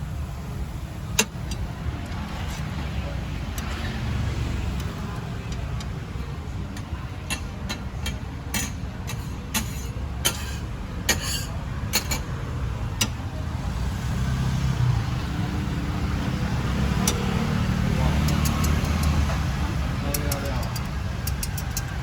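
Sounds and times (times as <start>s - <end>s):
metal cooking utensils clinking: 7.2s - 12.4s.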